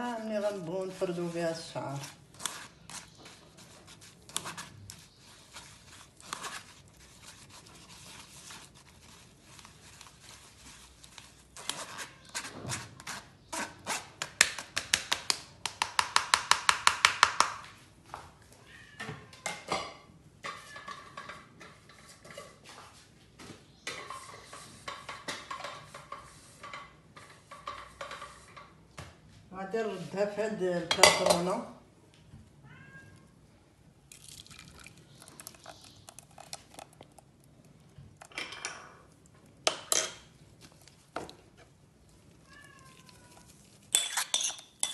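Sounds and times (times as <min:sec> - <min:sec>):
spoon scraping with light ringing: 0:00.1 - 0:14.0, 0:43.0 - 0:44.9.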